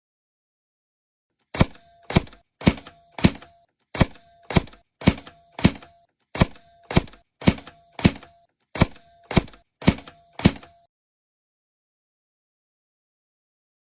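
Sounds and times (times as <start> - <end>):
airsoft gun sharp cracks: 1.5 - 10.8.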